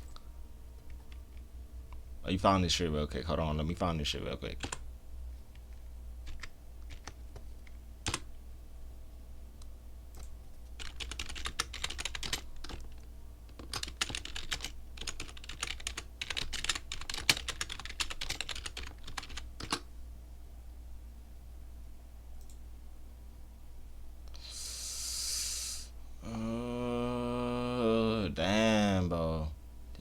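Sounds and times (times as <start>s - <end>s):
steady low hum: 0.0s - 30.0s
typing on a keyboard: 4.6s - 4.8s, 6.2s - 8.3s, 10.2s - 19.8s.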